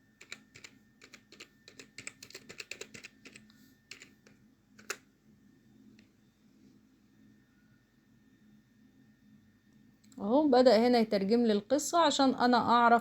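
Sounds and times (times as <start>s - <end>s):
typing on computer keyboard: 0.0s - 5.0s.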